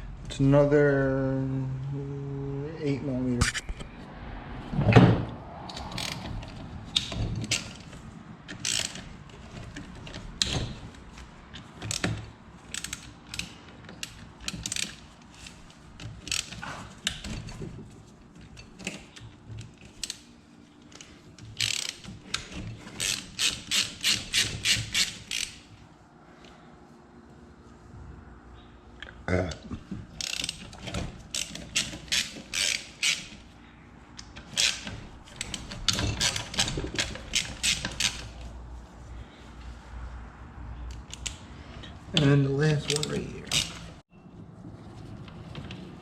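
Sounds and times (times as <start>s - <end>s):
ratchet wrench clicking: 8.5s - 9.1s, 12.6s - 15.6s, 16.3s - 17.2s, 21.4s - 25.6s, 30.2s - 30.7s, 31.3s - 33.4s, 34.2s - 38.4s, 42.8s - 43.8s.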